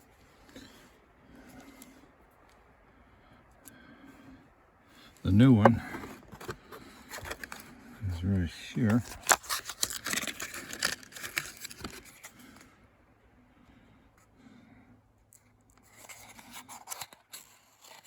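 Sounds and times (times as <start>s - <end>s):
small parts clicking and rustling: 8.8s - 12.7s.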